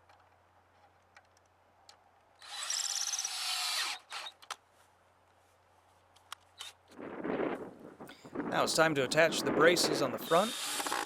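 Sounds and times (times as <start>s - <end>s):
drill driving a bolt: 2.4s - 4.6s, 10.3s - 11.0s.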